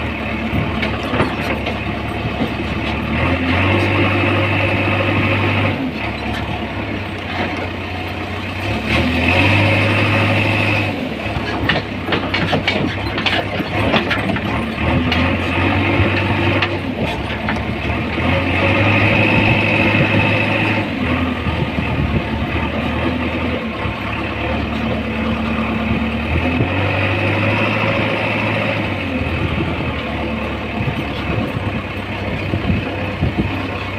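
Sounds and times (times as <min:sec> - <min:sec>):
diesel engine running: 0:00.0 - 0:33.9
sharp knocks and clatter: 0:00.5 - 0:06.6, 0:09.6 - 0:20.4.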